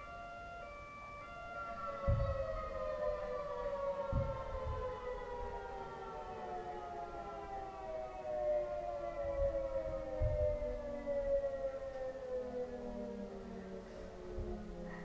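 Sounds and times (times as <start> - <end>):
two-tone warning siren: 0.0 - 15.0
low thumps: 2.0 - 2.8, 4.0 - 5.6, 9.2 - 10.8.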